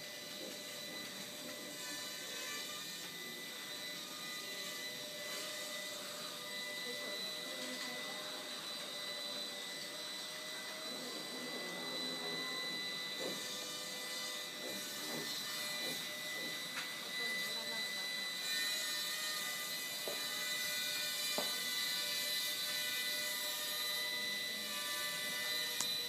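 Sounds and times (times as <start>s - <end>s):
small quadcopter motors whirring: 0.0s - 26.0s.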